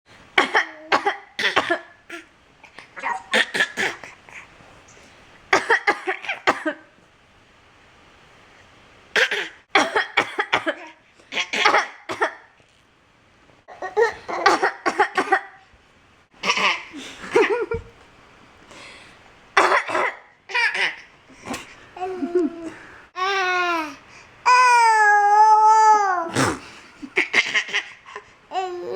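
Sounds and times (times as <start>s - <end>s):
adult coughing: 0.4s - 2.0s, 5.6s - 6.9s, 9.2s - 12.5s, 14.4s - 15.6s, 19.6s - 20.9s
baby imitating coughs: 0.4s - 4.5s, 5.5s - 6.8s, 9.2s - 12.6s, 14.3s - 15.6s, 16.4s - 17.0s, 19.6s - 21.7s, 26.3s - 28.0s
laughter: 17.0s - 18.0s.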